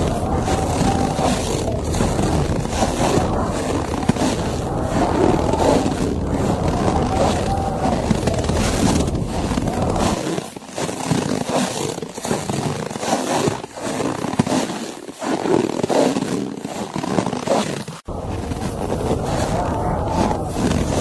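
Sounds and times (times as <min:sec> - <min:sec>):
blizzard wind gusting: 0:00.0 - 0:10.2, 0:18.1 - 0:21.0.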